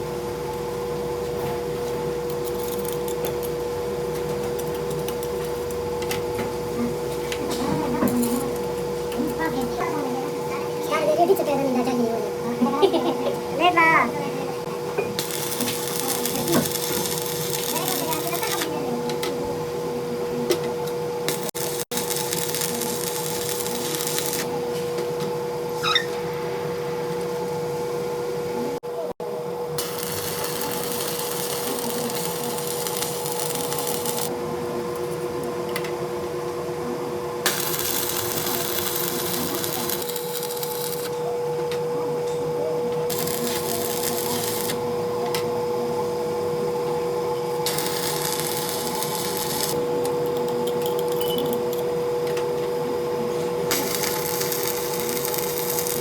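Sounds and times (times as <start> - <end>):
workshop machine humming: 0.0 - 56.0
hissy cutting noise: 47.6 - 49.8.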